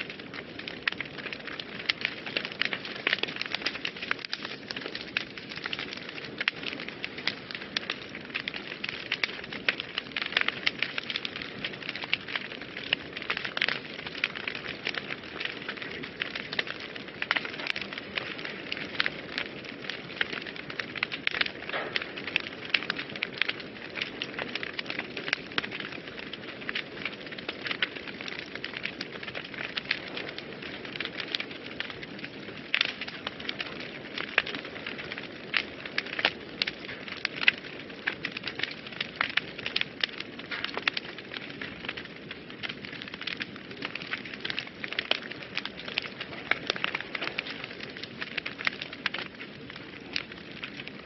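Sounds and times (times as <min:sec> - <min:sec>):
wood fire crackling and popping: 0:00.0 - 0:51.0
low rush of flame: 0:13.6 - 0:38.7.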